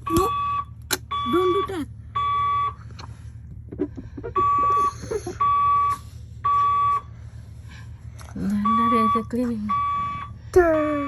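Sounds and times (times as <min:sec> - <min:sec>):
fire alarm beeps: 0:00.1 - 0:02.8, 0:04.4 - 0:07.1, 0:08.5 - 0:10.4.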